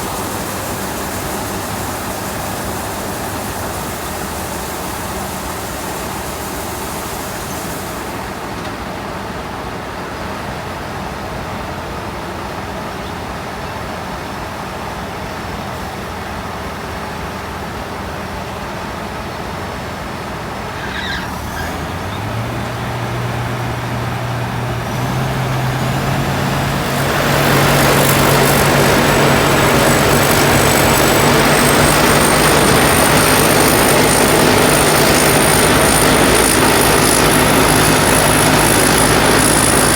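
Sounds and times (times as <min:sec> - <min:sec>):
combine harvester engine revving: 0:00.0 - 0:39.9
thin high whine: 0:20.7 - 0:39.9.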